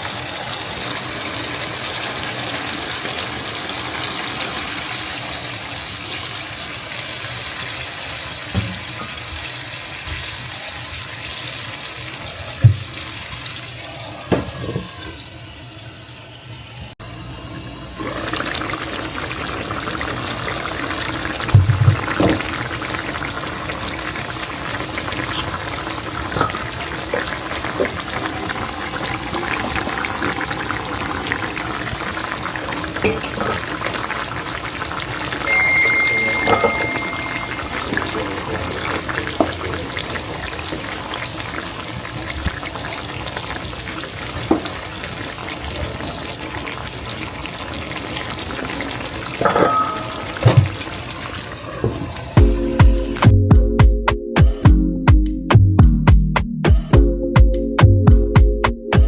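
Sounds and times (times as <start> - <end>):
water running from tap: 0.0 - 15.3, 18.0 - 53.4
dishes knocking: 26.3 - 27.9, 35.8 - 37.9, 49.4 - 51.0.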